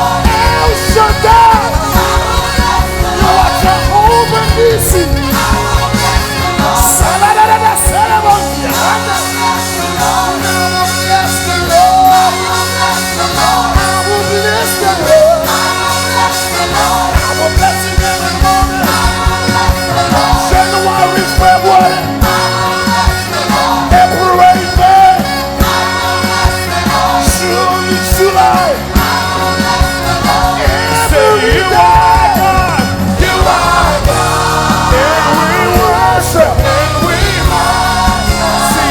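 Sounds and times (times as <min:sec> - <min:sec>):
drum hits: 0:00.0 - 0:07.2
bass line: 0:00.0 - 0:38.9
worship band playing: 0:00.0 - 0:38.9.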